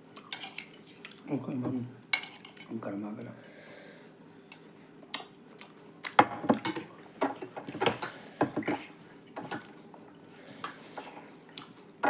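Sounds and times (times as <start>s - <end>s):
cutlery clicking and scraping plates: 0.2s - 0.8s, 2.1s - 2.7s.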